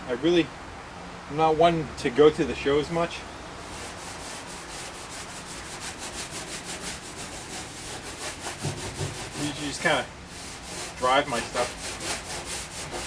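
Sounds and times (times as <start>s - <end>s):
sandpaper rasping on metal: 3.6s - 13.0s.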